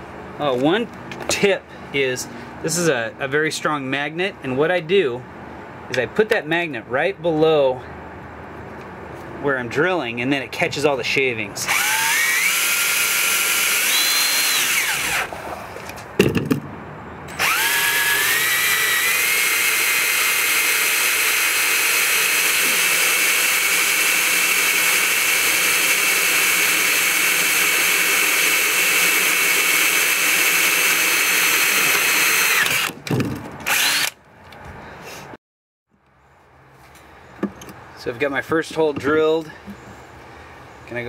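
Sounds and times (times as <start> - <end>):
drill clicks: 11.7 - 15.3, 17.4 - 33.0, 33.6 - 34.2
power drill whining: 11.7 - 15.3, 17.4 - 33.0, 33.6 - 34.2.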